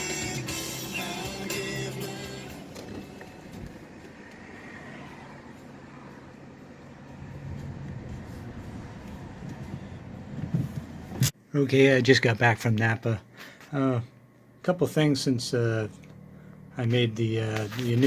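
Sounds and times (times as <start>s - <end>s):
car engine and road hum: 0.0s - 11.4s.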